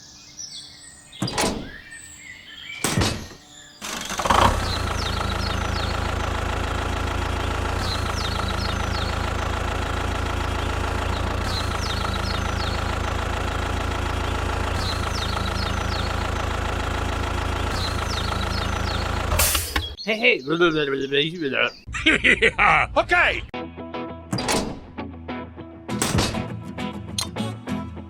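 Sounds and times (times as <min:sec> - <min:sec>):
engine idling: 0:02.8 - 0:20.0.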